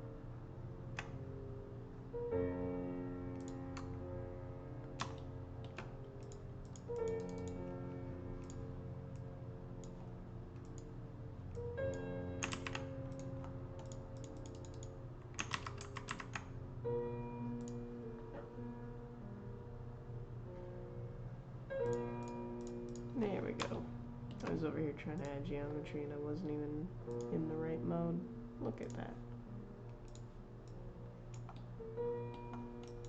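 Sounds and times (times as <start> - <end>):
calm background music: 0.0 - 33.0
keyboard and mouse clicking: 1.0 - 1.2, 3.3 - 4.0, 4.9 - 7.6, 8.4 - 9.2, 10.6 - 10.9, 11.5 - 16.5, 17.6 - 17.8, 21.8 - 24.6, 27.1 - 27.4, 30.0 - 31.7, 32.3 - 33.0.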